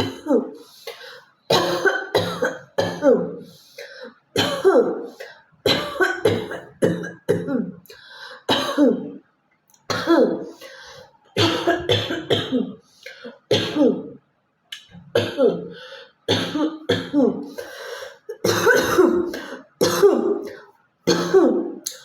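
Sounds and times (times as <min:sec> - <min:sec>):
woman coughing hard: 0:00.0 - 0:00.6, 0:01.5 - 0:03.4, 0:04.4 - 0:05.1, 0:05.7 - 0:07.8, 0:08.5 - 0:09.2, 0:09.9 - 0:10.6, 0:11.4 - 0:12.8, 0:13.5 - 0:14.1, 0:15.2 - 0:15.7, 0:16.3 - 0:21.8.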